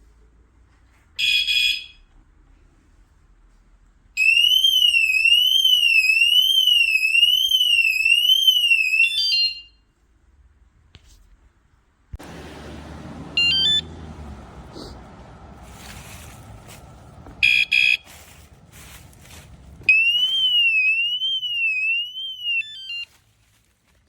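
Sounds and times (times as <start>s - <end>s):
warbling alarm siren: 4.2s - 9.7s, 13.3s - 14.6s, 17.2s - 18.2s, 19.8s - 23.0s
anti-theft alarm chirp: 4.2s - 9.9s, 13.4s - 13.9s, 17.4s - 18.1s, 19.9s - 23.1s
quick stepped beeps: 17.4s - 18.1s.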